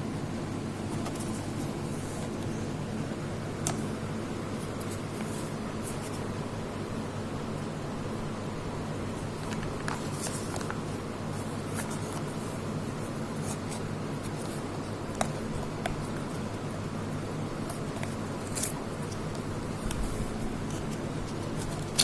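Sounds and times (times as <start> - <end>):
steady low hum: 0.0 - 22.0
cardboard and plastic rustling: 0.9 - 2.4, 9.4 - 16.7, 17.6 - 22.0.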